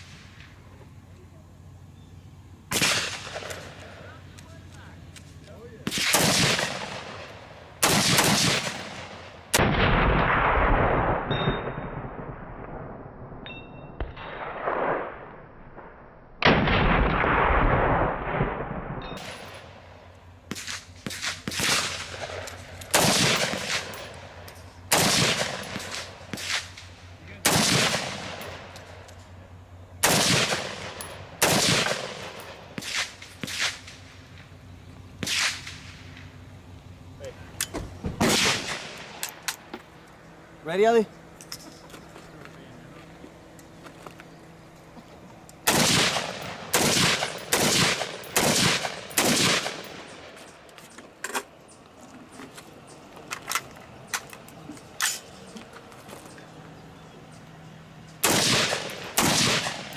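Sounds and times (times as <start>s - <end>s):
semi-automatic gunshots with echo: 5.8s - 12.1s, 27.4s - 28.8s, 30.0s - 33.9s, 45.7s - 50.3s, 58.2s - 59.9s.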